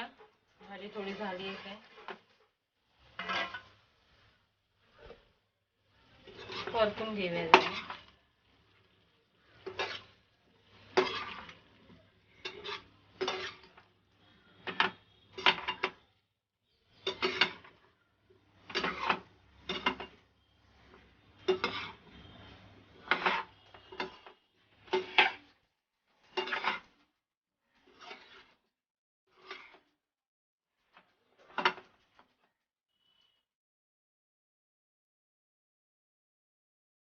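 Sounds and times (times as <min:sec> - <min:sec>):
spatula scraping metal pan: 0:00.1 - 0:16.1, 0:16.7 - 0:27.1, 0:27.7 - 0:28.7, 0:29.3 - 0:29.9, 0:30.8 - 0:32.3.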